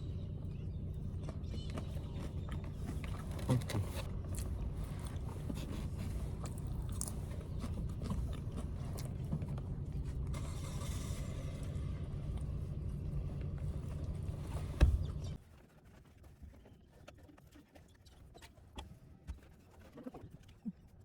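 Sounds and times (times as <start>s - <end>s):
steady low rumble: 0.0s - 15.4s
person chewing: 1.3s - 10.1s.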